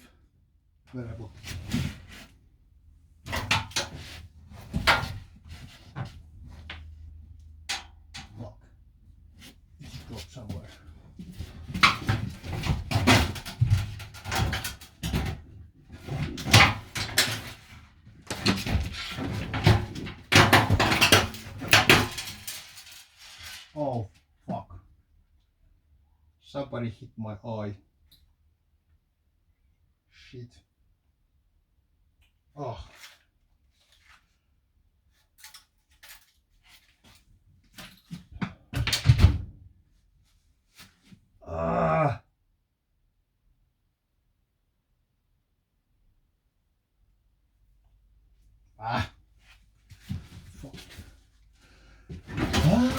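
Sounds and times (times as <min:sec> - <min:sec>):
objects knocking and clattering: 0:03.3 - 0:06.9, 0:10.8 - 0:23.0, 0:52.1 - 0:52.9
clunks and rattling: 0:10.8 - 0:23.0, 0:52.1 - 0:52.9
objects scraping: 0:49.9 - 0:52.9.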